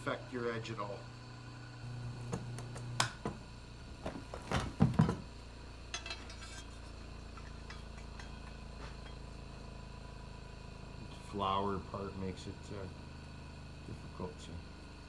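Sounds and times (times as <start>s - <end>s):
metal blade clinks and knocks: 5.9s - 9.3s.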